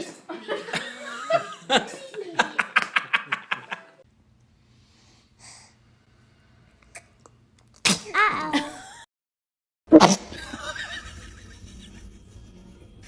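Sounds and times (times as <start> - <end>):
laughter: 0.0 - 4.0, 8.5 - 9.0, 10.3 - 13.0
faint breath: 4.6 - 6.6
baby sneezing: 7.8 - 8.7, 9.9 - 10.3.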